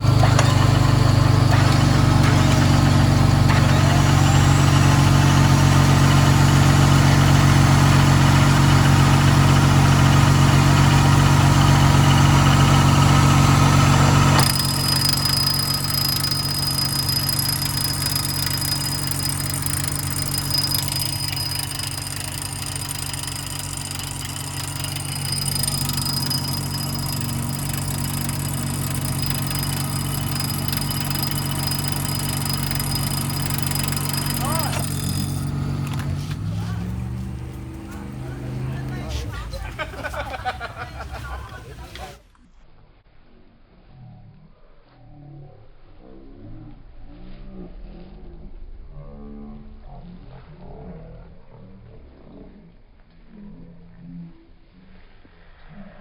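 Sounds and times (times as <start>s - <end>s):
off-road engine running steadily: 0.0s - 42.4s.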